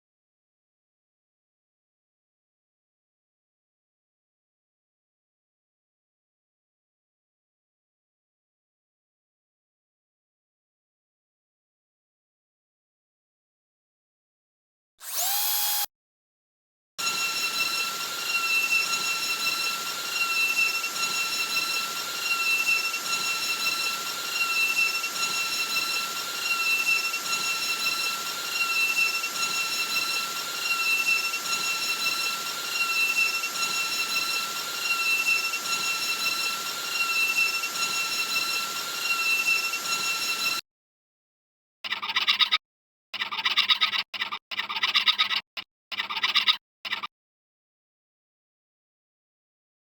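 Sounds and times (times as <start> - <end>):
electric motor whining: 15.0 - 15.9, 17.0 - 40.6.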